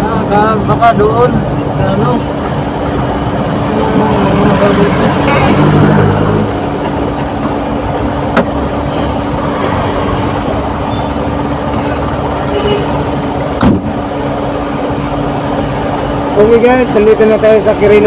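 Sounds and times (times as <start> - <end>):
vehicle driving on wet road: 0.2 - 16.4
loud knock: 13.6 - 13.9.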